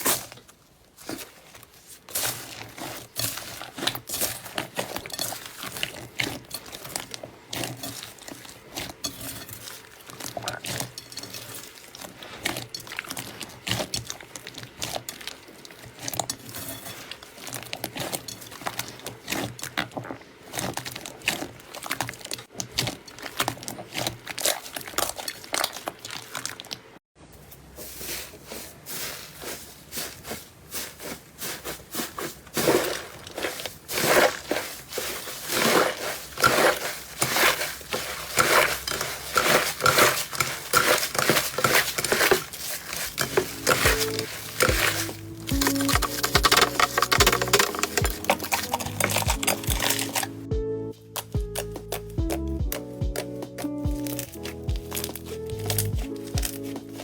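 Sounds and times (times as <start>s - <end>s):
slime crackling and popping: 0.0s - 27.0s, 32.6s - 50.4s, 51.1s - 57.0s.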